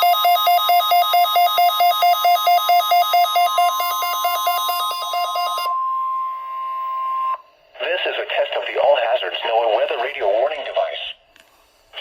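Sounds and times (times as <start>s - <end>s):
steady high alarm tone: 0.0s - 7.5s.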